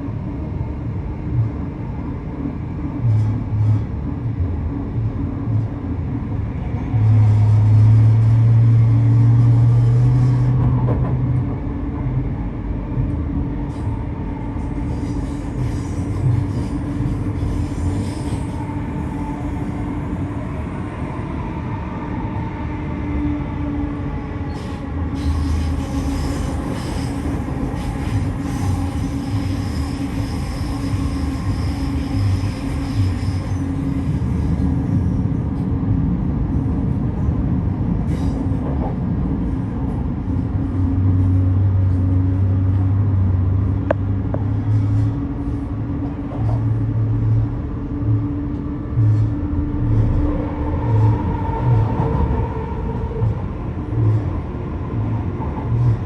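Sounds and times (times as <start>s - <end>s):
electric train hum and rumble: 0.0s - 56.0s
train clicks: 7.2s - 12.2s, 46.0s - 47.5s.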